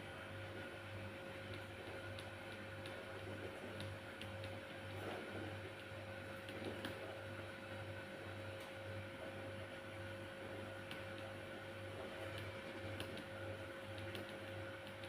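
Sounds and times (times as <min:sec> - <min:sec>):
pulsing electrical hum: 0:00.0 - 0:15.0
faint light ticks: 0:03.8 - 0:04.6.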